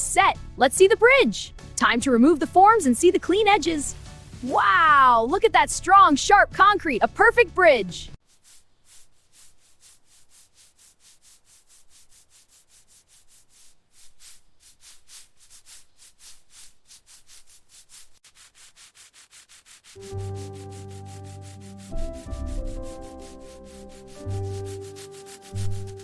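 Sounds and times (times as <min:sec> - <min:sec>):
fast rubbing strokes on a surface: 0:08.2 - 0:26.0.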